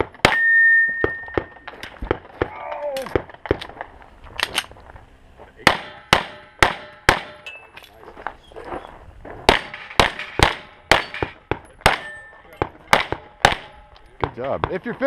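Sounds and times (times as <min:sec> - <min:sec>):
metallic ring of steel plate: 0:00.3 - 0:01.7, 0:12.0 - 0:12.6
pistol shots: 0:05.6 - 0:07.5, 0:09.5 - 0:14.8.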